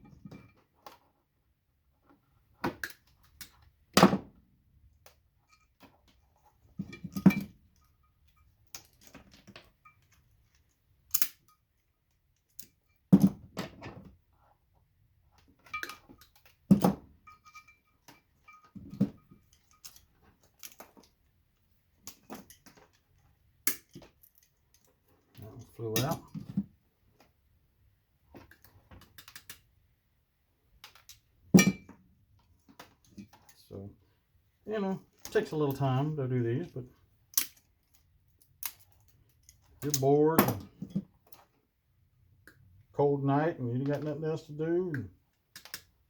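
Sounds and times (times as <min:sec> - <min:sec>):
small bulbs clicking and snapping: 0:11.1 - 0:11.4, 0:23.6 - 0:24.9, 0:28.6 - 0:29.6, 0:37.3 - 0:40.6, 0:44.9 - 0:45.9.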